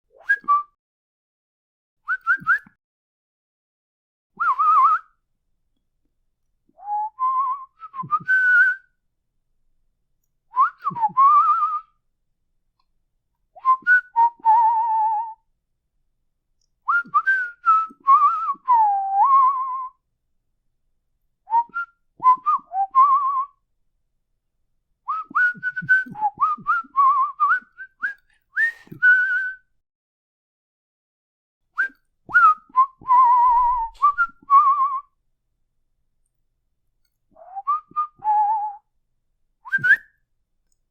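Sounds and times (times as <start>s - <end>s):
person whistling: 0.1s - 0.8s, 2.1s - 2.8s, 4.4s - 5.2s, 6.8s - 9.0s, 10.5s - 12.0s, 13.6s - 15.5s, 16.9s - 20.0s, 21.5s - 23.6s, 25.1s - 29.8s, 31.8s - 35.2s, 37.4s - 38.9s, 39.6s - 40.3s.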